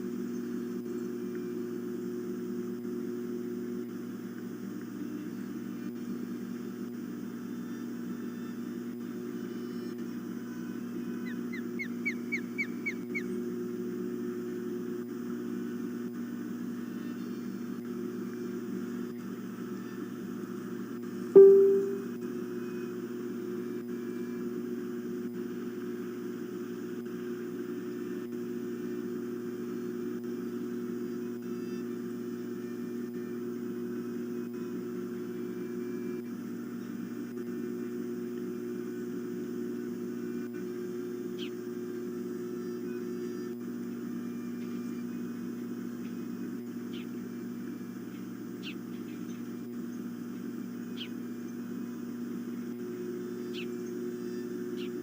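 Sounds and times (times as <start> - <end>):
electrical hum: 0.0 - 22.4, 23.3 - 55.0
faint high chirps: 21.4 - 22.1.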